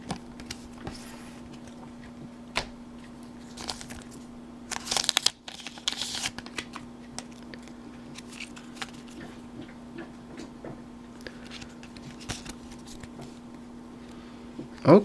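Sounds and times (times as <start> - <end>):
foil wrapper crinkling and tearing: 3.3 - 9.3.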